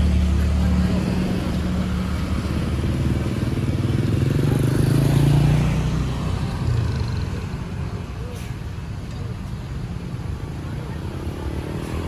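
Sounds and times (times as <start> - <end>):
vehicle engine passing by: 10.8 - 12.0.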